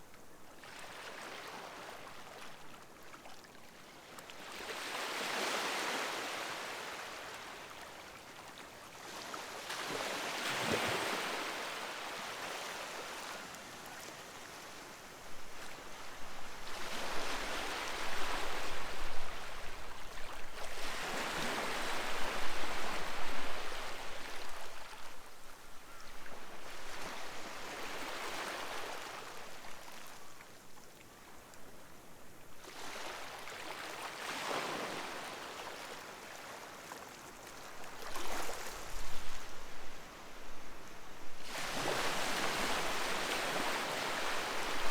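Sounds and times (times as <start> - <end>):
sea waves breaking on shore: 41.4 - 44.9.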